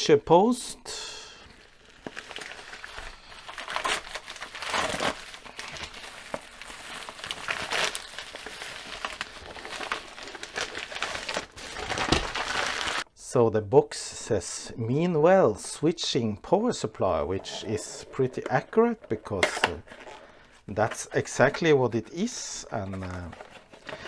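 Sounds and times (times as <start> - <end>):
packaging crinkling: 1.4 - 13.0, 17.2 - 24.0.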